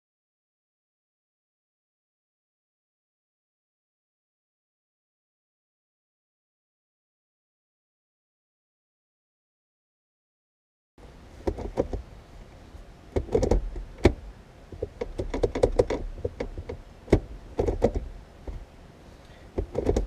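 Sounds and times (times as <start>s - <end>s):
shift knob clicks and knocks: 11.4s - 12.0s, 13.1s - 18.6s, 19.5s - 20.0s
shift knob rattling: 11.4s - 12.0s, 13.1s - 18.6s, 19.5s - 20.0s.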